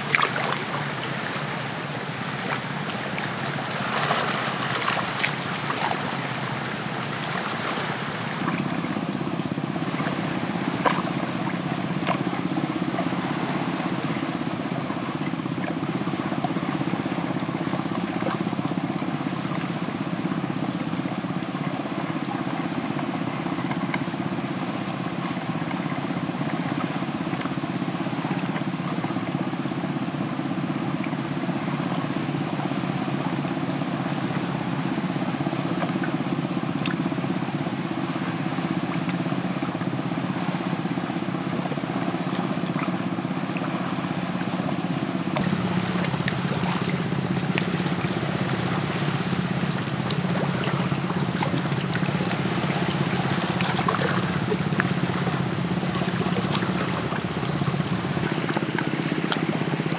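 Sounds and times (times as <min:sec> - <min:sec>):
liquid bubbling in a pot: 0:41.2 - 0:59.9.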